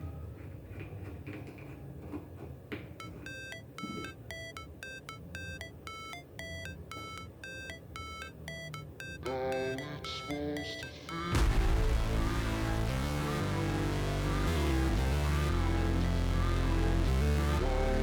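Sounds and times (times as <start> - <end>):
bell-like electronic melody: 3.0 - 17.3
low bass layer: 11.4 - 18.0.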